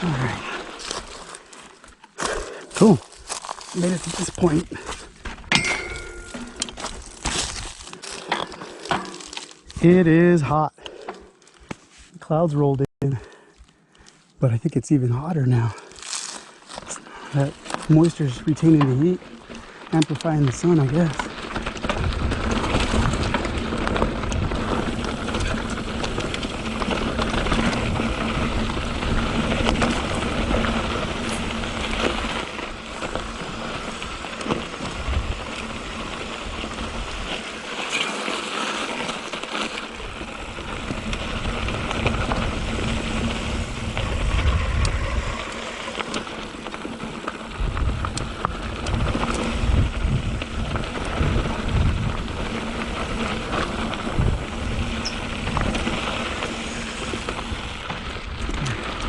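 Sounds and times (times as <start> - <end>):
tyres crunching on dirt and rock: 0.0 - 59.0
bike rattling with sharp clicks: 15.8 - 59.0
wind buffeting microphone: 21.7 - 32.4, 40.5 - 45.6, 47.5 - 57.9.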